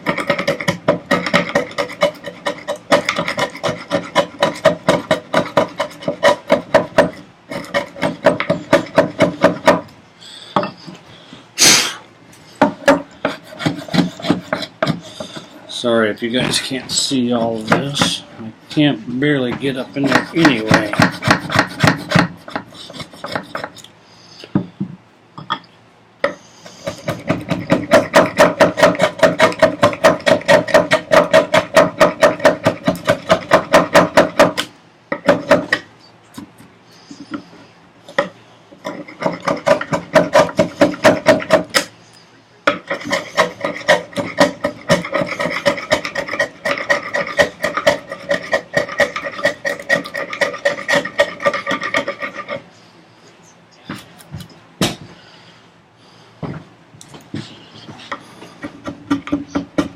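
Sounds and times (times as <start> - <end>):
hand rasp on wood: 0.0 - 9.8, 12.6 - 15.6, 20.0 - 23.8, 26.3 - 34.6, 38.2 - 41.9, 42.7 - 52.7, 57.4 - 59.9.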